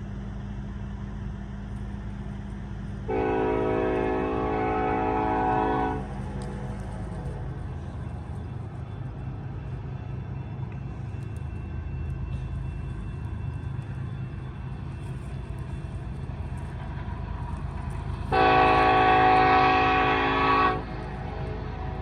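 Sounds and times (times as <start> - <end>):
train rumble: 0.0 - 22.0
locomotive horn blast: 3.1 - 6.1, 18.3 - 21.9.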